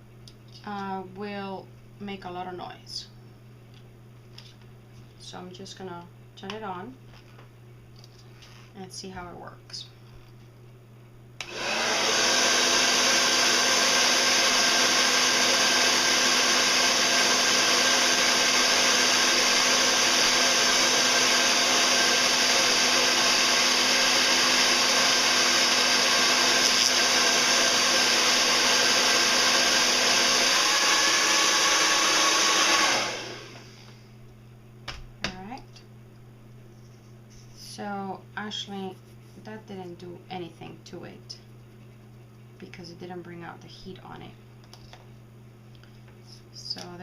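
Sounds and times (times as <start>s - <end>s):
hair dryer blowing: 11.4s - 34.0s.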